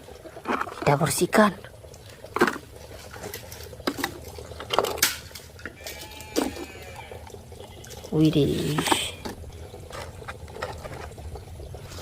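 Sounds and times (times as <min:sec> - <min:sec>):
water splashing and trickling: 0:00.0 - 0:12.0.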